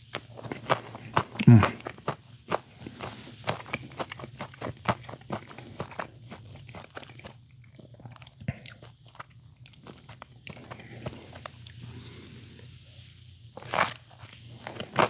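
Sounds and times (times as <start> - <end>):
chewing pizza: 0.0 - 15.0.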